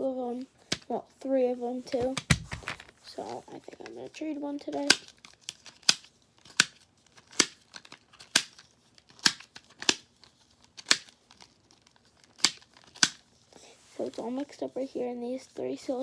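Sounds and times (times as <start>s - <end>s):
plastic fidget toy clicking: 3.7s - 10.1s, 10.8s - 11.5s, 12.3s - 13.2s.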